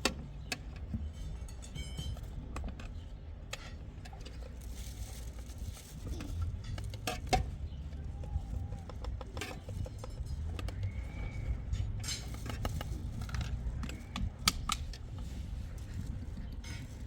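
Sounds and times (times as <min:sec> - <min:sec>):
dishes and utensils clinking: 0:01.0 - 0:02.6.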